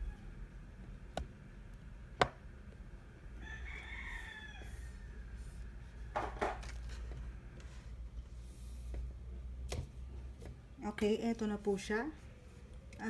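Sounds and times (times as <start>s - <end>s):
rooster crowing: 3.4s - 6.4s.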